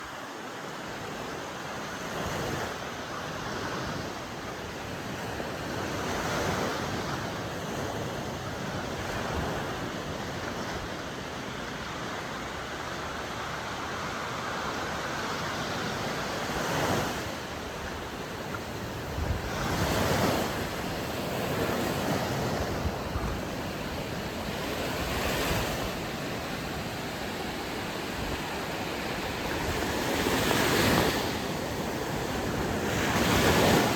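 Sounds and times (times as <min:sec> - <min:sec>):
sea surf waves breaking: 0:08.7 - 0:33.9.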